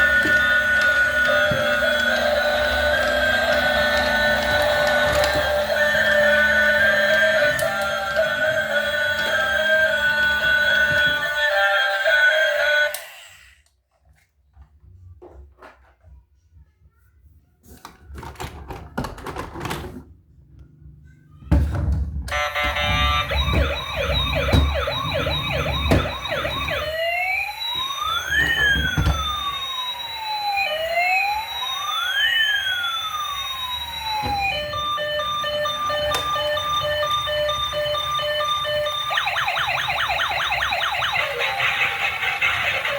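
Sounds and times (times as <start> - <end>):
toy electronic siren: 0.0 - 13.6, 22.3 - 42.9.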